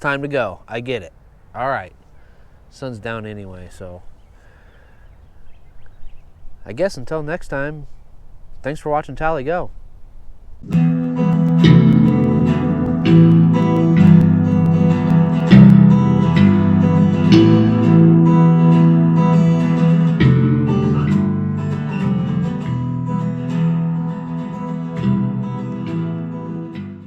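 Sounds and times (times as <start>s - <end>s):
strummed acoustic guitar chords: 10.6s - 27.0s.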